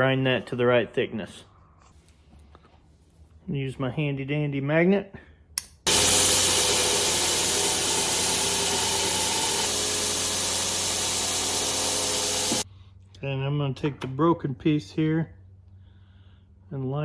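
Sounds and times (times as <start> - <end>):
electric grinder grinding steel: 5.9 - 12.6.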